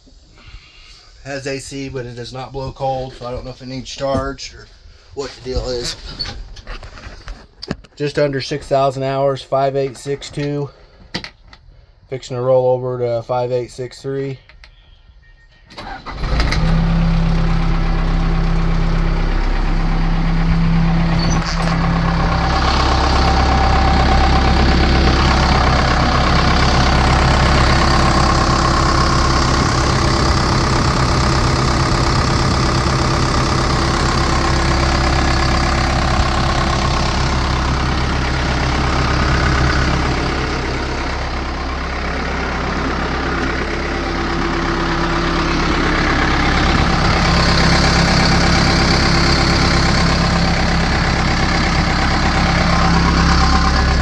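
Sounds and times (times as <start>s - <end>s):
diesel engine starting and running: 15.7s - 54.0s.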